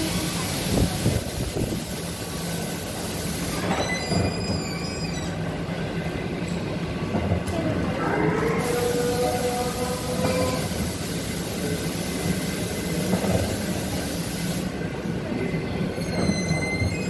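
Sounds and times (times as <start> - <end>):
ride car hum on track: 0.0 - 17.0
high metallic wheel squeal: 3.7 - 5.4, 15.9 - 17.0.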